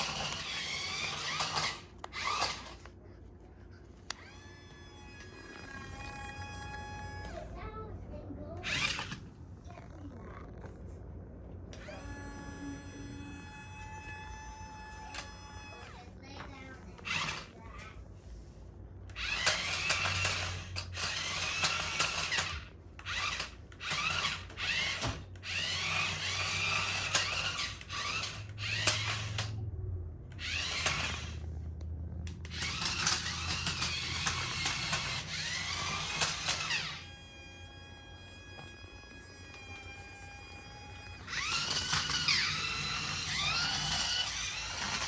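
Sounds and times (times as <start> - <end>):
toy car motor whirring: 0.0 - 3.0, 4.1 - 7.8, 8.5 - 9.8, 11.7 - 16.1, 17.0 - 17.9, 19.1 - 29.6, 30.3 - 31.7, 32.3 - 45.0.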